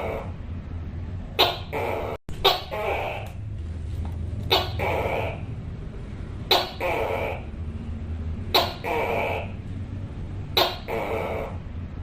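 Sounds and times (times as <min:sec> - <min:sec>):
steady low hum: 0:00.0 - 0:12.0
gecko calling: 0:01.4 - 0:03.4, 0:04.4 - 0:05.6, 0:06.5 - 0:07.5, 0:08.5 - 0:09.6, 0:10.5 - 0:11.6.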